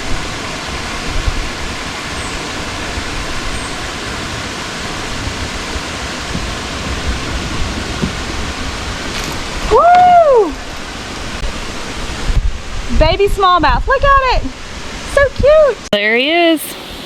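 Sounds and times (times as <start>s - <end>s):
water rushing over waterfall: 0.0s - 15.8s.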